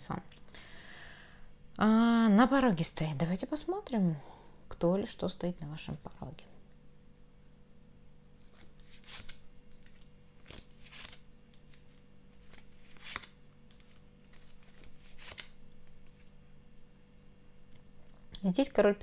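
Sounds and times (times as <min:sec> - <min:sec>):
faint steady hum: 0:00.0 - 0:19.0
cards sliding and flicking: 0:08.4 - 0:16.2.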